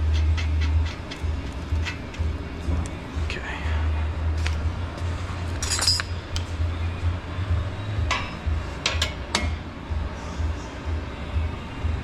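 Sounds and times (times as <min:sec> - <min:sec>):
steady low hum: 0:00.0 - 0:12.0
metal tools clinking: 0:05.6 - 0:06.5.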